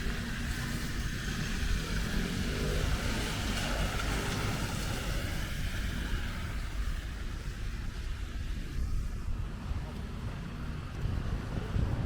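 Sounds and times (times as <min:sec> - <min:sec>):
tyres hissing on wet pavement: 0:00.0 - 0:11.8
road traffic rumble: 0:00.0 - 0:12.0.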